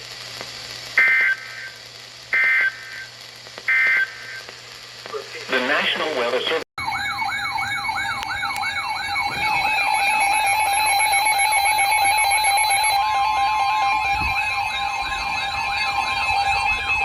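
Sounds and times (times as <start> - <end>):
steady high tones: 6.8 - 17.0
warbling electronic alert tone: 6.8 - 17.0.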